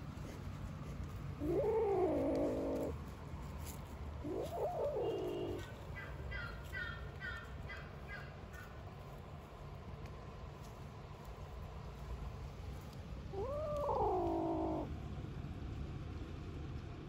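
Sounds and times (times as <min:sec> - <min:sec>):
cat meowing: 0:01.4 - 0:02.9, 0:04.3 - 0:05.6, 0:13.4 - 0:14.9.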